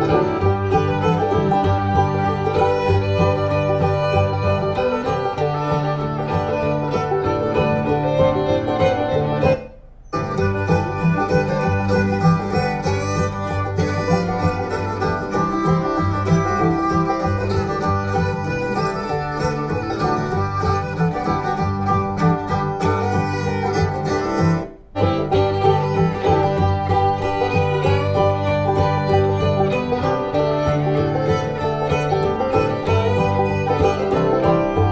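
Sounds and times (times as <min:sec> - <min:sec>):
instrumental music with plucked strings: 0:00.0 - 0:34.9.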